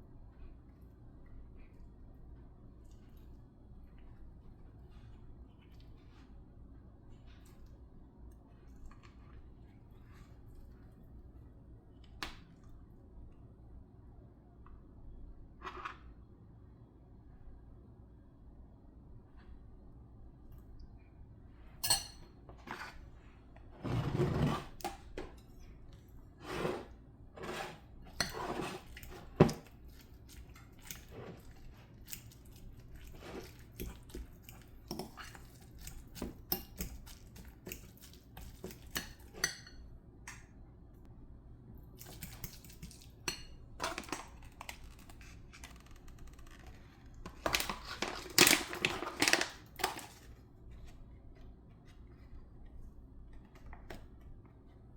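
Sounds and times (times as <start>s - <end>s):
dishes and utensils clinking: 21.8s - 23.0s, 38.4s - 39.8s.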